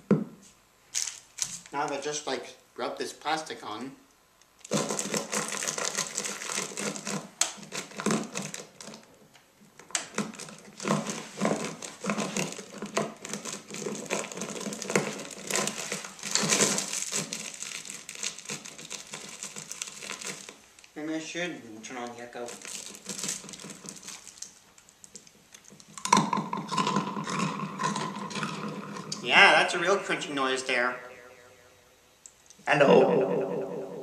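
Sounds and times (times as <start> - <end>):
plastic wrapper crinkling: 0.9 - 2.1, 4.6 - 9.1, 10.0 - 21.0, 22.4 - 28.4.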